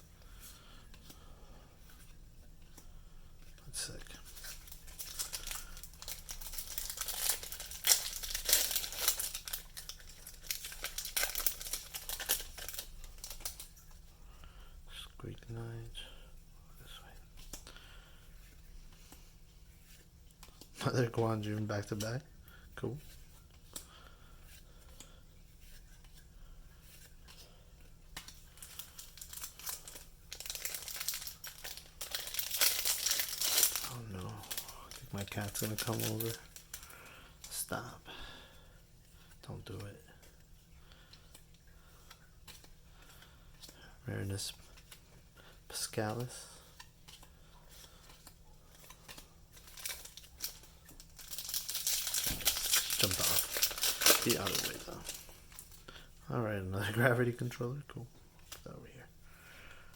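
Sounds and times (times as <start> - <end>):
foil wrapper crinkling and tearing: 3.8 - 13.8, 28.2 - 37.7, 41.0 - 56.1.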